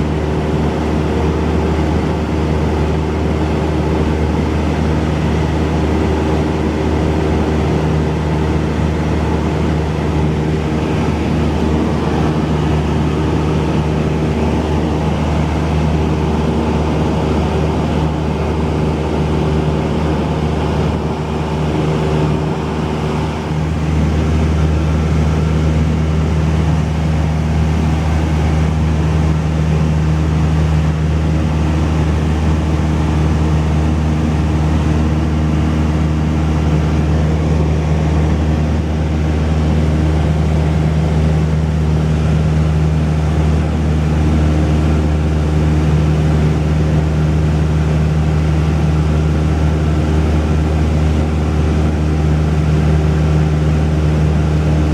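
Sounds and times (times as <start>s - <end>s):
propeller plane engine drone: 0.0s - 54.9s.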